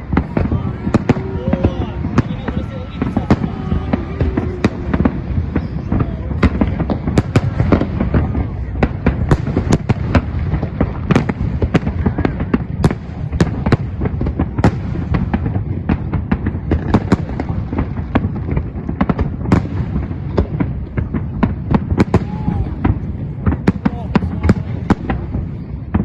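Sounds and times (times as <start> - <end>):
faint firework whistle: 0.0 - 6.5
fireworks bangs and crackles: 0.0 - 26.0.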